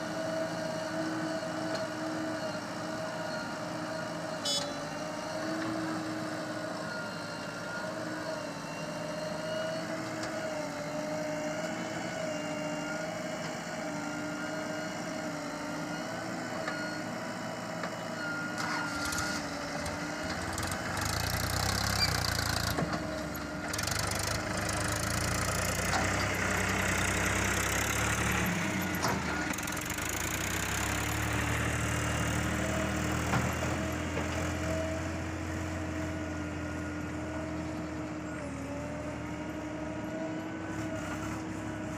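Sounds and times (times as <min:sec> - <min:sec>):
heavy machinery diesel engine: 0:00.0 - 0:41.9.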